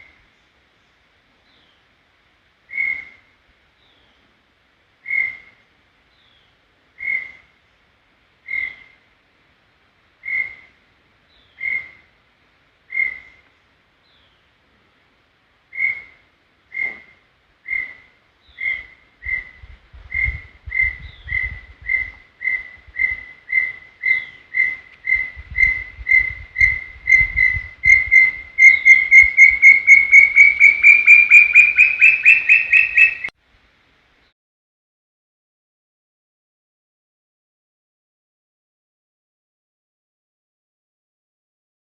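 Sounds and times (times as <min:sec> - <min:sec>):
bird whistling single notes: 0:21.9 - 0:33.3.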